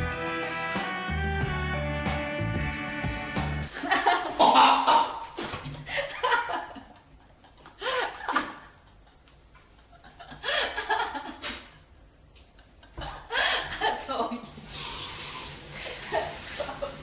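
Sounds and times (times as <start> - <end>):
people laughing: 5.9 - 11.6.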